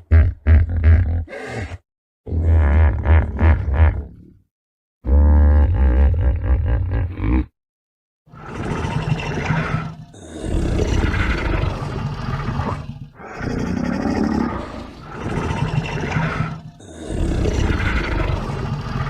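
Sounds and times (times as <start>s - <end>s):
dinosaur calls: 8.4s - 19.0s.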